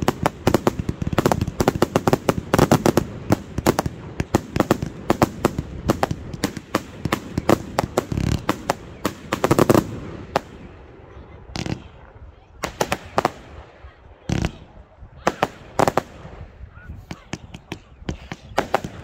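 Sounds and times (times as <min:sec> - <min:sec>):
firework bangs and cracks: 0:00.0 - 0:10.8, 0:11.5 - 0:12.0, 0:12.6 - 0:19.0.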